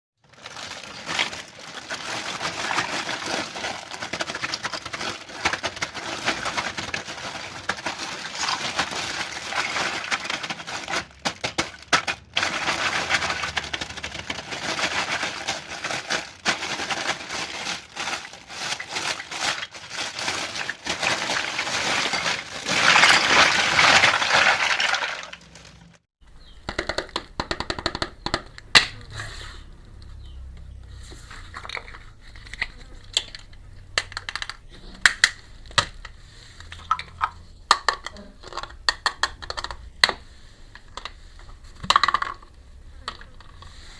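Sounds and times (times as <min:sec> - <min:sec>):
plastic packaging crinkling: 0:00.2 - 0:26.1.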